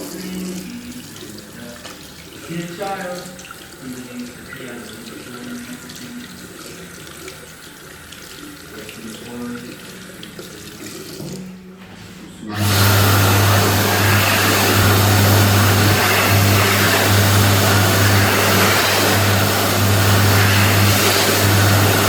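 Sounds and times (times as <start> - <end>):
electric hand dryer running: 12.5 - 22.0
tap running: 12.5 - 22.0.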